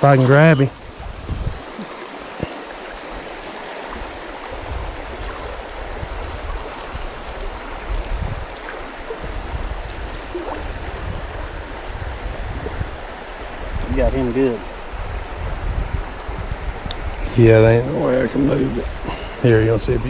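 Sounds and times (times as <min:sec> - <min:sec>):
river water flowing: 0:00.0 - 0:20.0
low rumbles on microphone: 0:00.9 - 0:02.6, 0:09.1 - 0:17.9.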